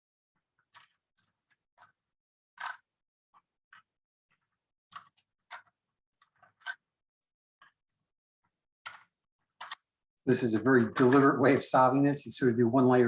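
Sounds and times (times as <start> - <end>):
puzzle cube plastic clicks: 2.6 - 2.9, 3.7 - 6.9.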